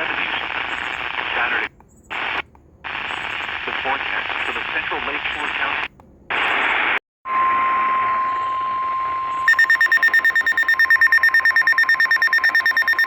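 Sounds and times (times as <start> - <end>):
radio hiss: 0.0 - 7.0
steady warning alarm tone: 7.3 - 13.0
rapid pulsing alarm beep: 8.1 - 13.0.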